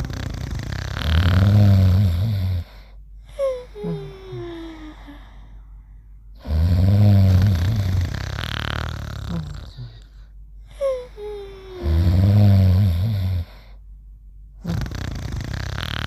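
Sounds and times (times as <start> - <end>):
cartoon snore: 0.0 - 2.8, 6.4 - 10.0, 11.8 - 13.5, 14.6 - 16.0.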